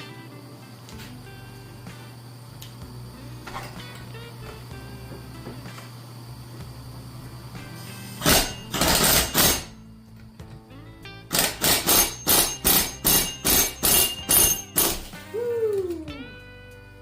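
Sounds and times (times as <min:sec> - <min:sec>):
hammer blows on metal: 0:08.2 - 0:09.8, 0:11.3 - 0:15.4.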